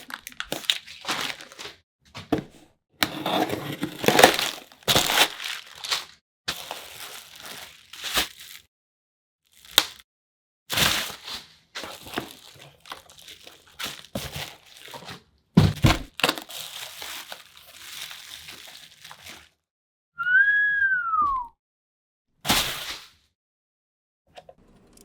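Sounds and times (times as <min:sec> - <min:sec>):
wrapping crinkling and rustling: 0:00.0 - 0:01.8, 0:03.4 - 0:08.7, 0:09.5 - 0:10.0, 0:10.7 - 0:19.6
package thunk: 0:15.6 - 0:16.5
short rising and falling squeak: 0:20.2 - 0:21.5.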